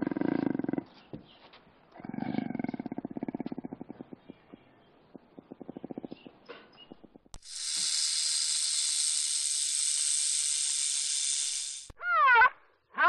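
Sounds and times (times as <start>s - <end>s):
faint low growl pulses: 2.0s - 6.3s
rattlesnake rattle buzzing: 7.4s - 11.9s.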